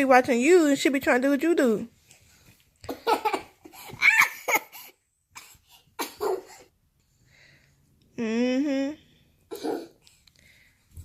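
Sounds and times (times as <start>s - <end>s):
small child laughing: 2.9s - 4.8s.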